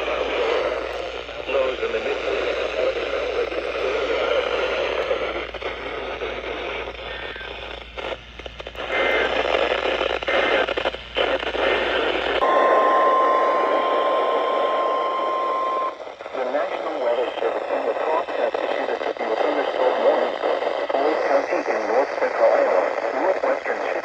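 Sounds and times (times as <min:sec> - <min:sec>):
crackling radio static: 0:00.0 - 0:24.0
steady high alarm tone: 0:12.4 - 0:16.1.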